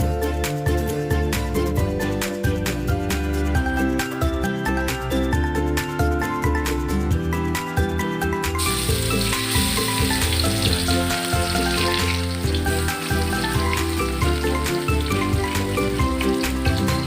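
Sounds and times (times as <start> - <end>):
background music: 0.0 - 17.0
oil sizzling in a wok: 8.6 - 17.0.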